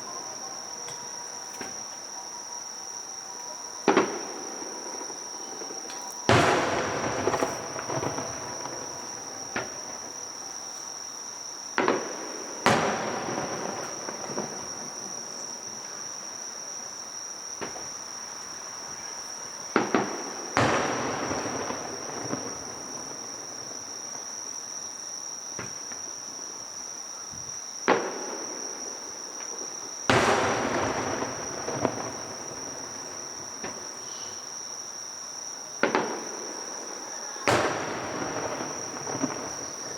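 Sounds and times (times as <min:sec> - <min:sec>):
firework shells bursting: 0:03.9 - 0:10.8, 0:11.8 - 0:16.2, 0:19.0 - 0:23.8, 0:30.0 - 0:34.1, 0:35.8 - 0:39.9.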